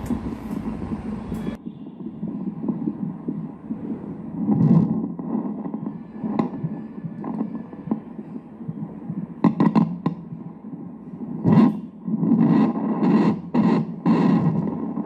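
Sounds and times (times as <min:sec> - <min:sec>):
fetal heartbeat throbbing pulses: 0:00.1 - 0:15.0.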